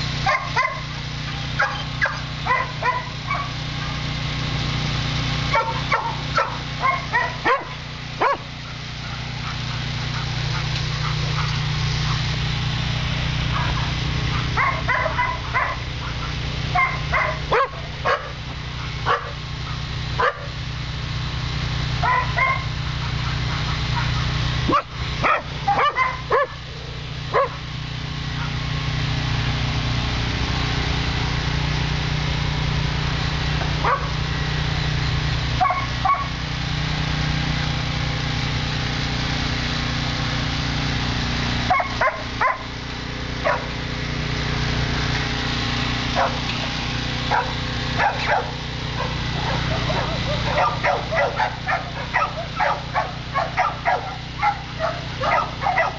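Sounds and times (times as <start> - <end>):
dogs barking and yipping: 0.0 - 21.2, 21.8 - 30.1, 33.0 - 36.8, 41.4 - 55.9
low hum: 0.0 - 55.9.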